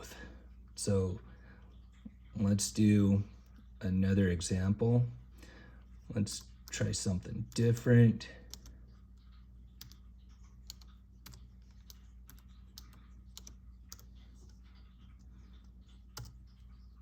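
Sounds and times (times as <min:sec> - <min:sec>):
steady low hum: 0:00.0 - 0:17.0
computer keyboard keystrokes: 0:08.5 - 0:08.7, 0:09.8 - 0:14.6, 0:15.5 - 0:16.6.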